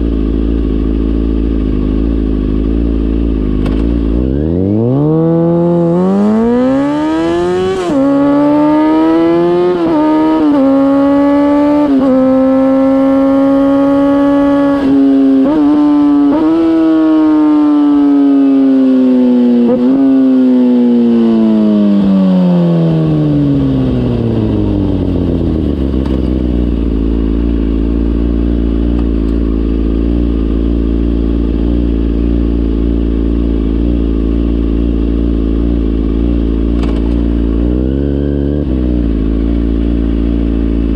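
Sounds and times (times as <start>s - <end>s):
motorcycle engine accelerating: 0.0s - 40.9s
motorcycle engine idling burble: 23.4s - 37.7s.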